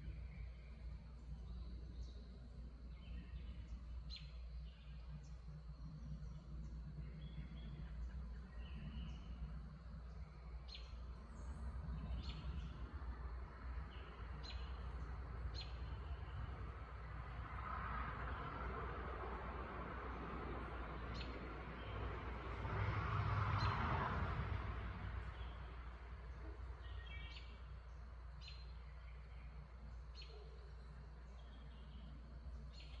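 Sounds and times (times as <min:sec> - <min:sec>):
low background hum: 0:00.0 - 0:22.6, 0:24.2 - 0:33.0
steady low rumble: 0:00.0 - 0:33.0
faint high bird chirps: 0:26.3 - 0:33.0.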